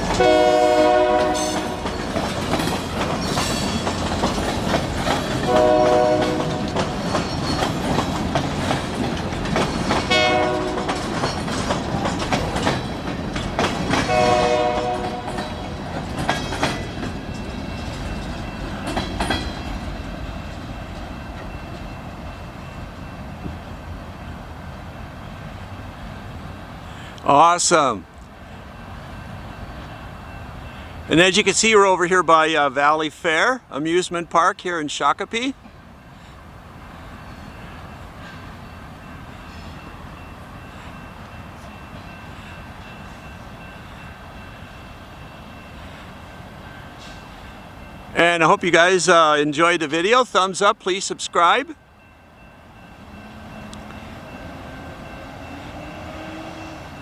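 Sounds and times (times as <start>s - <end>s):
freight train wheels rumbling: 0.0s - 57.0s
wheels clicking over rail joints: 1.0s - 22.0s.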